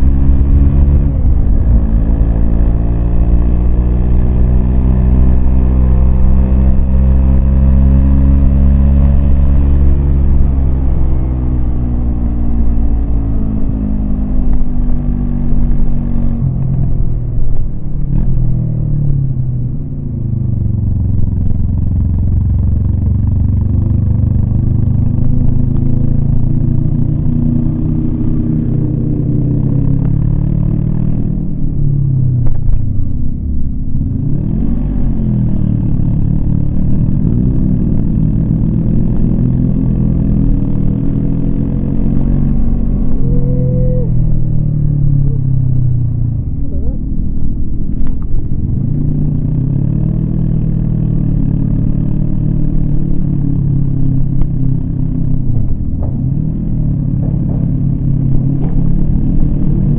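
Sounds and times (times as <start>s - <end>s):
motorcycle engine under load: 44.1s - 59.9s.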